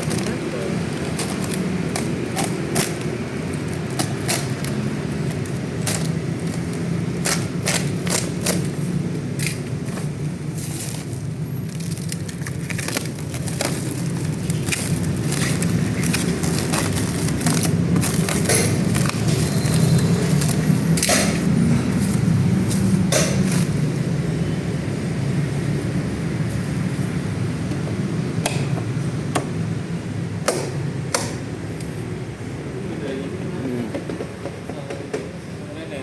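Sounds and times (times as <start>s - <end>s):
packaging crackling: 0.0s - 22.8s.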